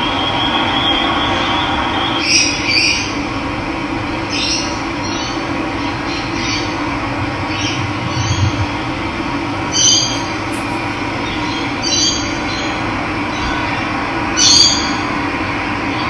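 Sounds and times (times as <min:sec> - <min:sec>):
birds chirping: 0:09.6 - 0:12.2.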